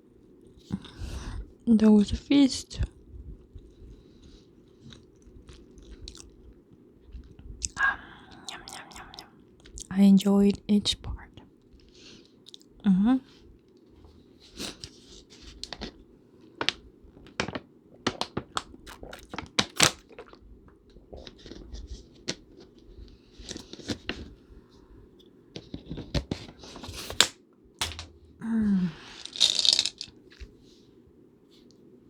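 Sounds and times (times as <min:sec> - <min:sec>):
wrapper crinkling: 0:16.6 - 0:20.4
person humming: 0:28.4 - 0:29.1.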